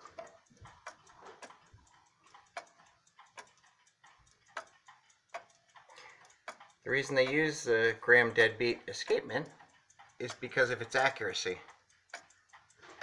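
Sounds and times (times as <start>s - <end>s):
clock ticking: 0.0s - 13.0s.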